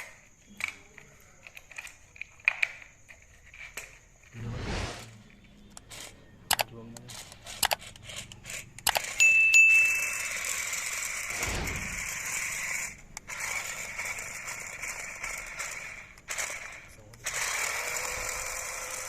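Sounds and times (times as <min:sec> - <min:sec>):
toy car electric motor whine: 0:05.2 - 0:06.4, 0:07.0 - 0:19.0.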